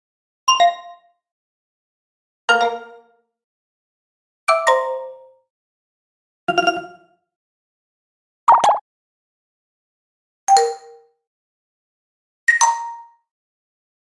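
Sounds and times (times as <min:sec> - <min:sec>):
electronic notification chimes: 0:08.5 - 0:08.8.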